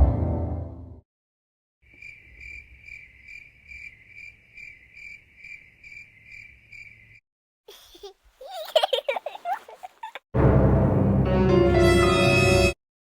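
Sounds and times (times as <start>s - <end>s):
crickets chirping: 1.8s - 7.2s.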